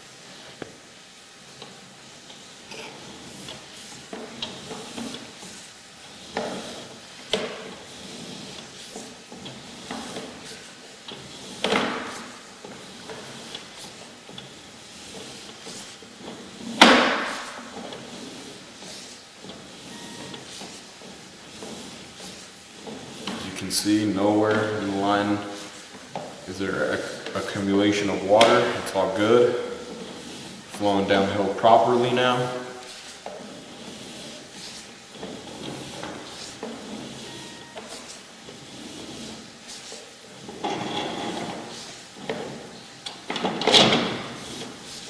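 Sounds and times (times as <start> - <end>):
equipment knocking and scraping: 19.4 - 32.4.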